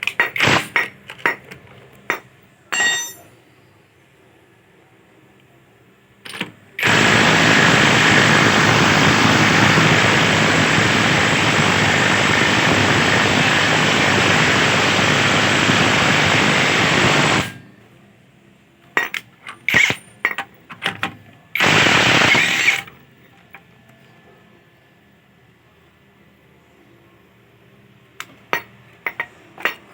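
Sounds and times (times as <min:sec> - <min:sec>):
impact wrench hammering: 0:02.7 - 0:03.2, 0:06.4 - 0:17.6.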